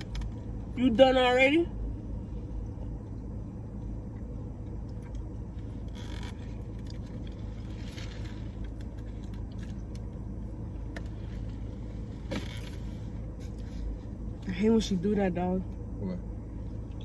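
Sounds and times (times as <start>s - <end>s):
low background rumble: 0.0s - 17.0s.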